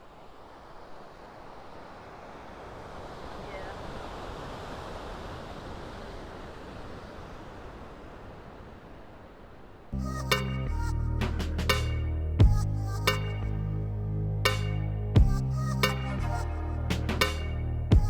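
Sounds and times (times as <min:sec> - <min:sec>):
ocean surf washing on shore: 0:00.0 - 0:10.0.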